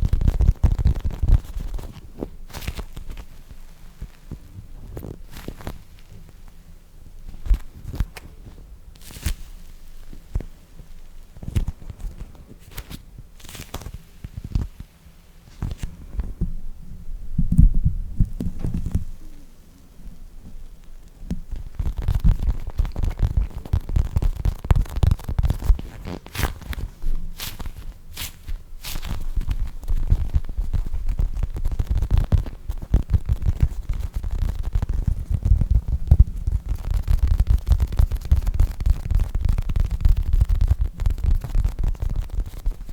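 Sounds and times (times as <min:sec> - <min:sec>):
soft low thuds: 0:15.8 - 0:19.5
squishy toys crackling clicks: 0:21.6 - 0:26.8.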